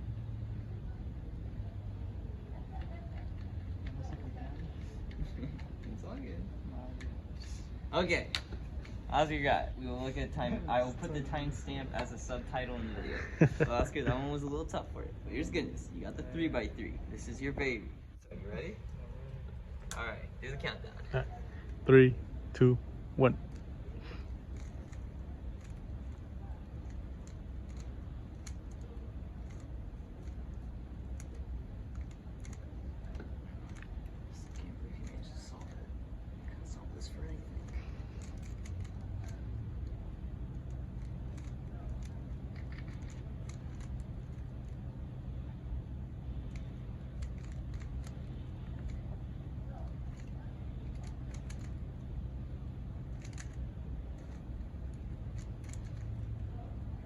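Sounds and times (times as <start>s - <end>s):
low background hum: 0.0s - 57.0s
plastic puzzle cube clicking: 50.1s - 51.8s, 53.1s - 53.6s.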